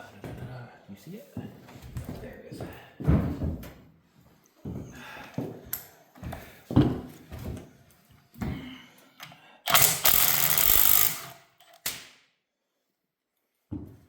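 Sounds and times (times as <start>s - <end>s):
power tool backing out bolt: 9.7s - 11.8s.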